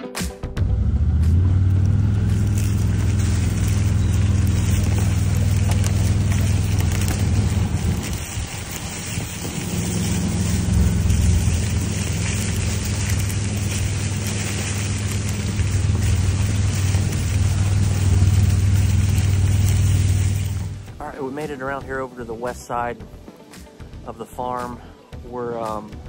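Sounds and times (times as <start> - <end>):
utility vehicle engine running: 0.5 - 21.2
ride noise: 0.6 - 24.3.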